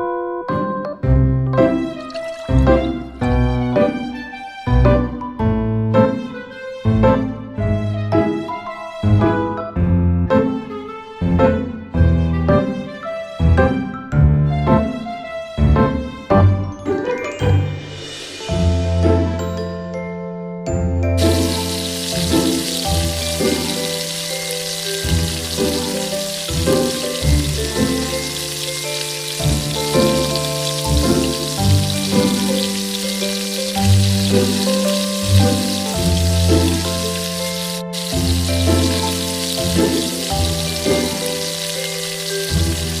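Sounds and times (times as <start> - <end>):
background music with held notes: 0.0 - 43.0
food sizzling in hot oil: 1.8 - 3.1, 21.2 - 43.0.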